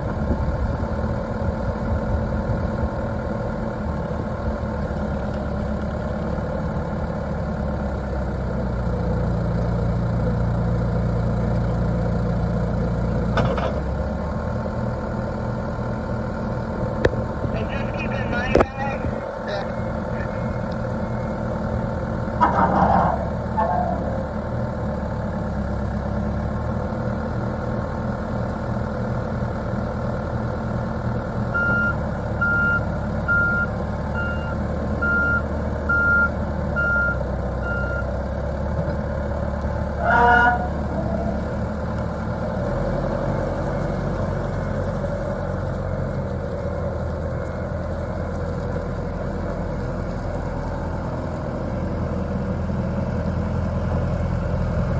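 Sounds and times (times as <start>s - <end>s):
diesel engine running: 0.0s - 54.9s
reverse alarm beeping: 31.6s - 38.1s.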